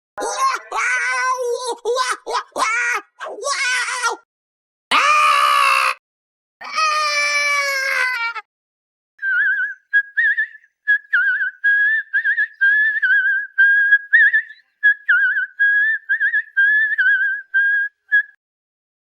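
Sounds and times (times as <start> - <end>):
person whistling a carefree tune: 9.2 - 18.4.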